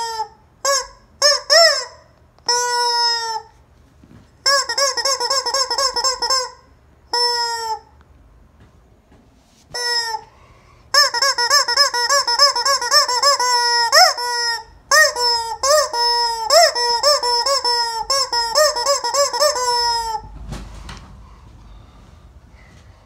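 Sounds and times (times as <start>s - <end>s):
rubber chicken toy squawking: 0.0s - 3.6s, 4.4s - 8.0s, 9.8s - 10.3s, 10.9s - 20.3s.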